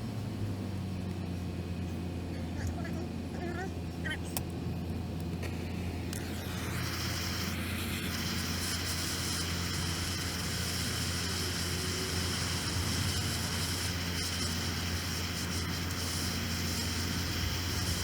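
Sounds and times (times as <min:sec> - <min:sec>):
steady mechanical hum: 0:00.0 - 0:18.0.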